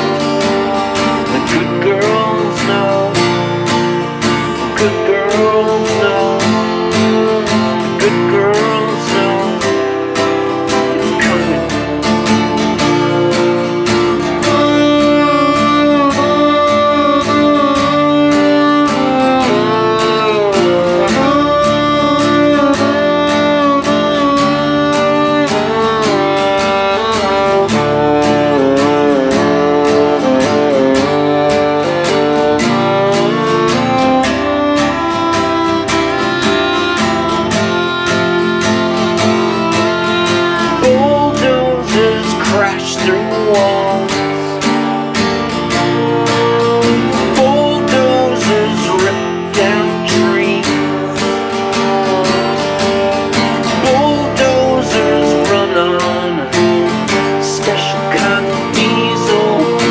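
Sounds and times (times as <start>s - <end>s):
strummed guitar: 0.0s - 59.9s
violin melody with sliding notes: 0.0s - 59.9s.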